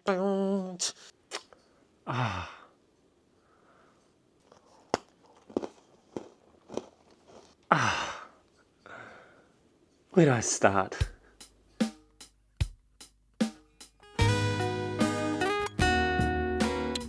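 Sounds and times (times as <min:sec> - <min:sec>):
person sighing: 0:02.0 - 0:02.8, 0:07.6 - 0:09.5.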